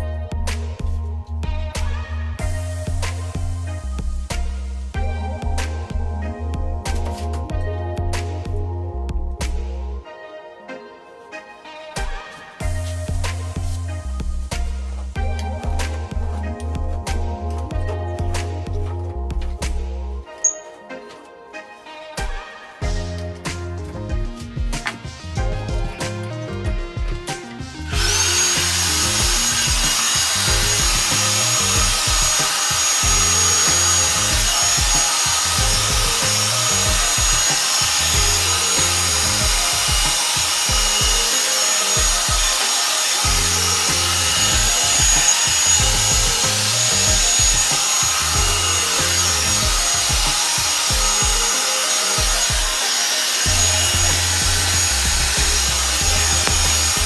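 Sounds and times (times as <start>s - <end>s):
background music with deep bass: 0.0s - 57.0s
hair dryer brush blowing air: 27.4s - 57.0s.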